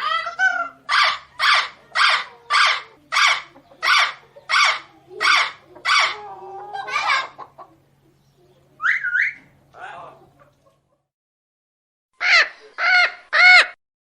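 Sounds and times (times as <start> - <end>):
parrot squawking: 0.0 - 7.6, 8.8 - 9.5, 12.2 - 13.8.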